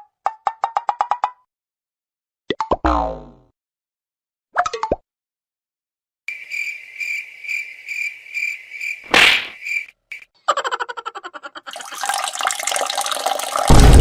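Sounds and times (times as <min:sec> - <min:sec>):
cricket chirping: 0:06.3 - 0:10.3.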